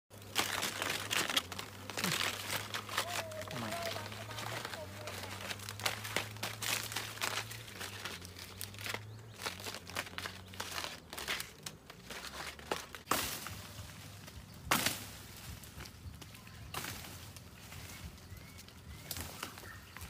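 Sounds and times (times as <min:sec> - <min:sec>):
crackling and rustling: 0:00.1 - 0:20.0.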